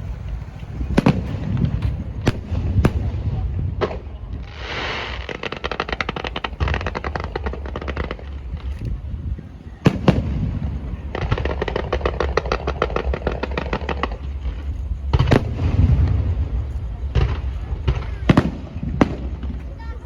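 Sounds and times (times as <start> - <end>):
crackling firework pops: 0.3 - 20.0.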